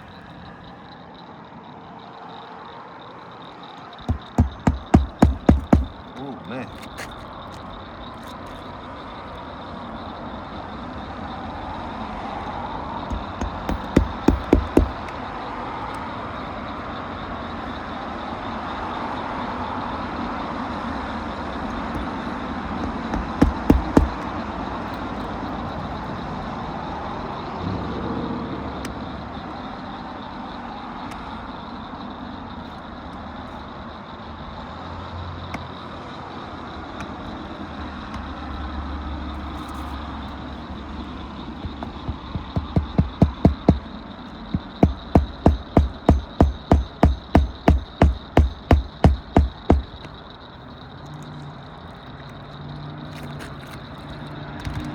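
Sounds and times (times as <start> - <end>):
hammer driving nails into shingles: 4.0 - 6.1, 13.1 - 15.1, 22.8 - 24.3, 41.6 - 43.9, 44.5 - 50.1.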